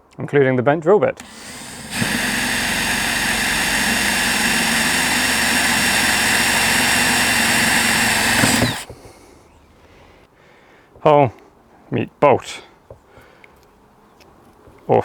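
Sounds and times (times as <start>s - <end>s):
electric drill boring: 1.2s - 9.2s.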